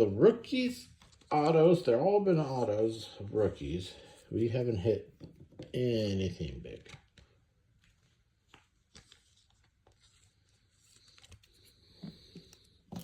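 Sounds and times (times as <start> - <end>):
trading cards rustling: 6.6 - 13.0.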